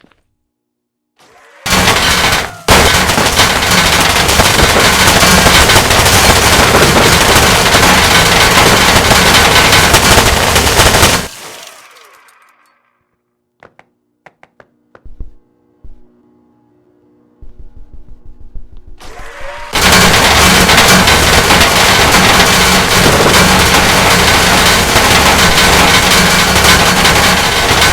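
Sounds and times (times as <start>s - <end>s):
automatic gunfire: 1.7s - 11.4s, 19.7s - 27.9s.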